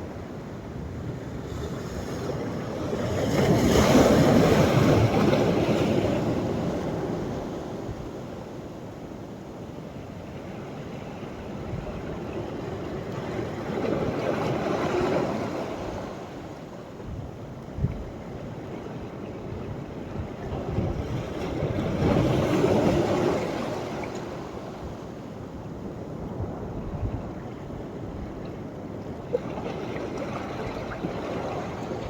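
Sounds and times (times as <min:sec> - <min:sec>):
sea waves breaking on shore: 0:00.0 - 0:32.0.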